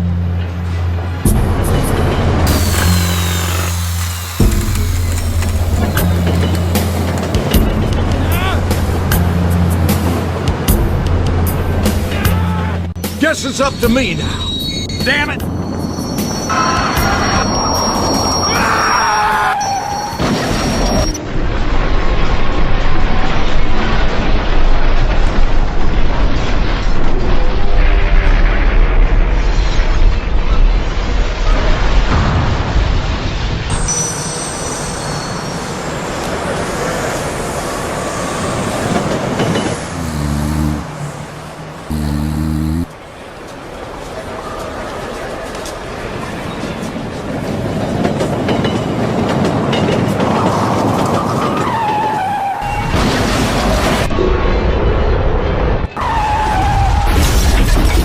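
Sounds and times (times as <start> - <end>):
train running on rails: 2.0 - 11.7, 33.7 - 42.1, 42.9 - 54.0
high steady squeal: 2.5 - 7.8, 33.7 - 42.0.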